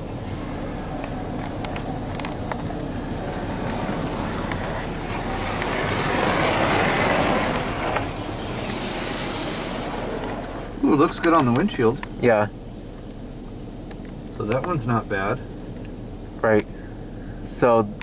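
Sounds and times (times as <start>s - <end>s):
low hum: 0.0s - 18.0s
spray hissing on vehicle: 3.4s - 10.8s.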